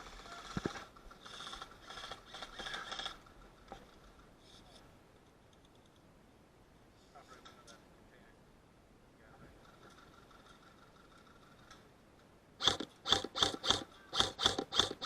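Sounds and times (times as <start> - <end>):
mechanical ratcheting clicks: 12.6 - 15.0.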